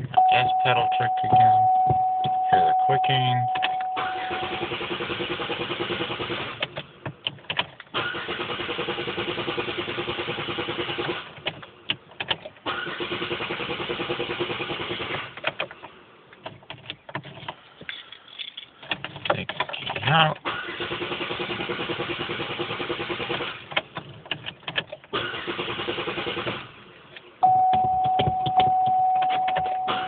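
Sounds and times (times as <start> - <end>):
starter cranking engine: 8.0 - 11.3, 20.4 - 23.7.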